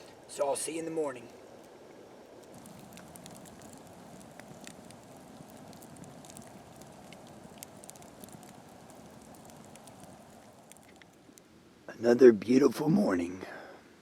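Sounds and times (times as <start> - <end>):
faint sharp crackles and ticks: 0.0 - 11.6.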